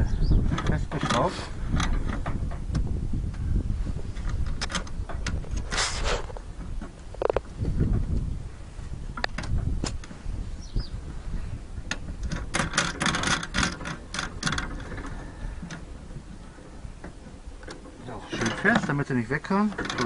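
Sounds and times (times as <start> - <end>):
metal clicking and rattling: 0.5 - 2.9, 4.2 - 8.2, 11.8 - 20.0.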